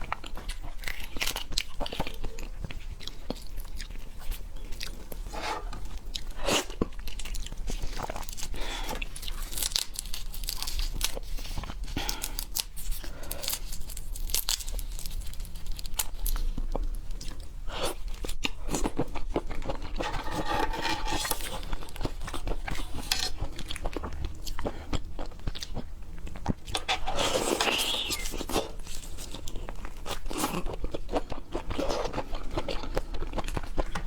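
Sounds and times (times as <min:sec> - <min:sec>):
person chewing crunchy food: 0:00.0 - 0:34.0.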